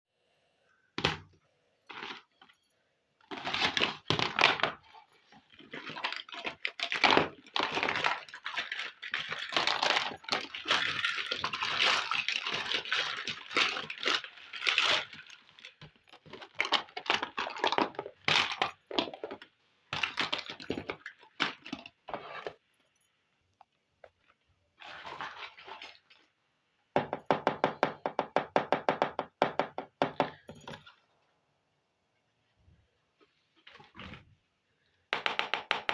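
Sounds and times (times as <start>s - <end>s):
packaging crinkling: 3.3s - 19.1s.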